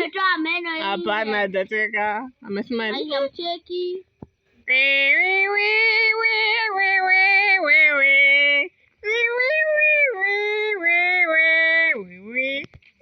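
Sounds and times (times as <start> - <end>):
high voice wavering sung tones: 4.7 - 12.7.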